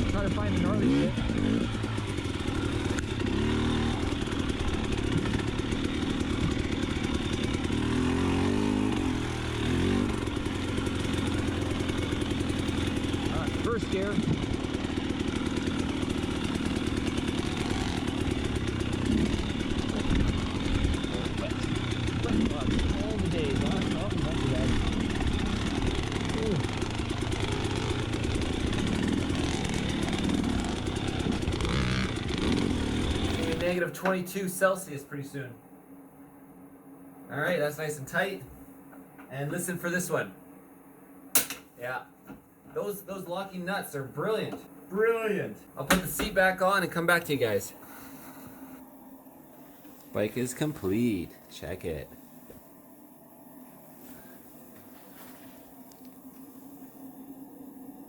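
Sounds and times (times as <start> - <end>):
motorcycle engine revving: 0.0 - 34.7.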